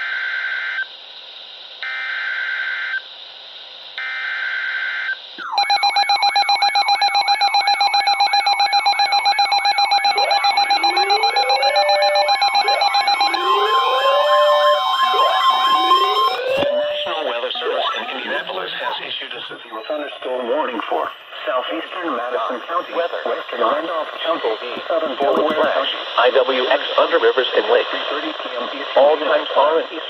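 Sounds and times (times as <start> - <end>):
warbling electronic alert tone: 5.4 - 18.5
screeching digital header tones: 5.4 - 19.0.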